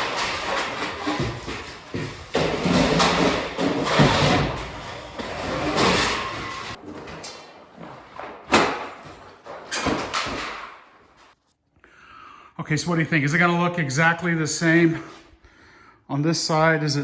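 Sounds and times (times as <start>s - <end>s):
wood paneling scraping and clattering: 0.0s - 11.4s.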